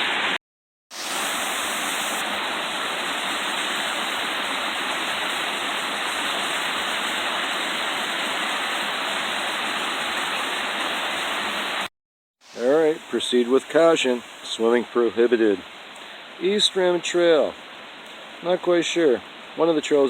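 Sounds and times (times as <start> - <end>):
waterfall rushing: 1.0 - 11.9.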